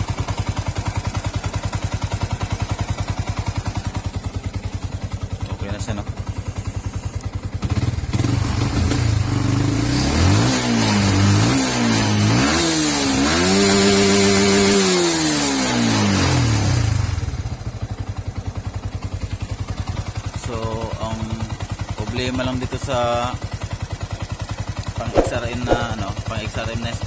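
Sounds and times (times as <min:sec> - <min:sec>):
motorcycle engine idling and revving: 0:00.0 - 0:27.0.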